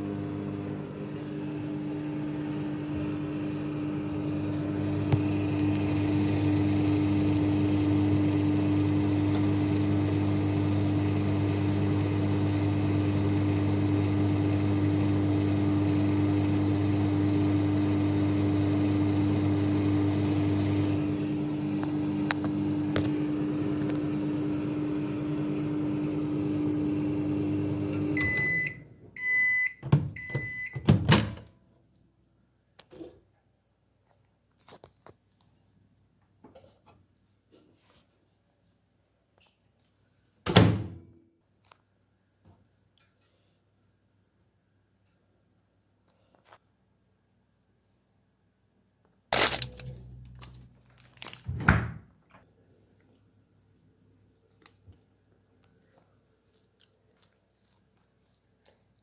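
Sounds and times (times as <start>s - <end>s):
microwave oven humming: 0.0s - 31.4s
microwave short beeps: 28.2s - 30.9s.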